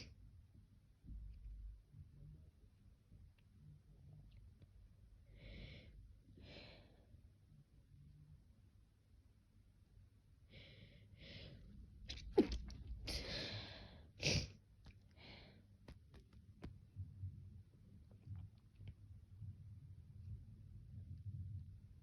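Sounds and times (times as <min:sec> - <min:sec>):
person sneezing: 0:12.1 - 0:13.4
breaths in: 0:13.1 - 0:14.1.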